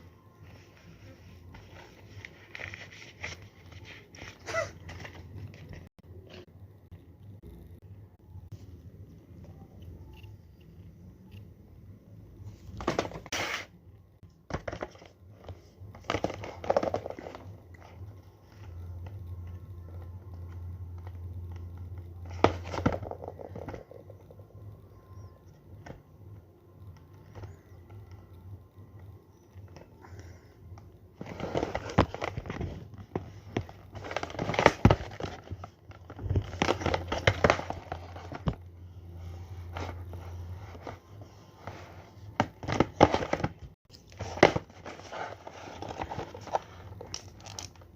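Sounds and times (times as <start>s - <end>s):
low steady hum: 0.0s - 47.9s
packaging crinkling and rustling: 31.2s - 38.6s.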